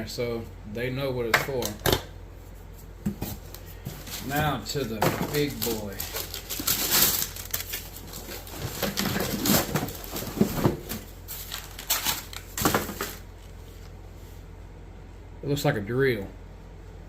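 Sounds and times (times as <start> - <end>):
packaging rustling and crinkling: 3.2 - 13.9.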